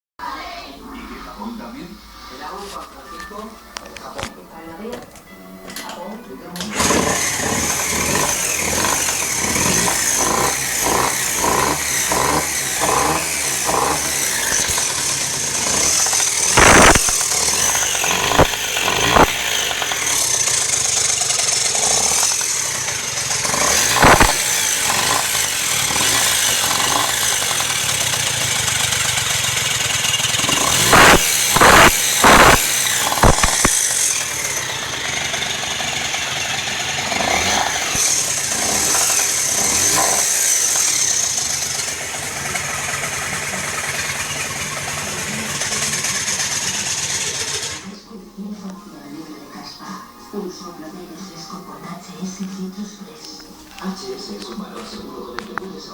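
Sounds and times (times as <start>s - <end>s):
engine running: 6.6s - 48.1s
loud sharp engine pops: 6.7s - 43.2s.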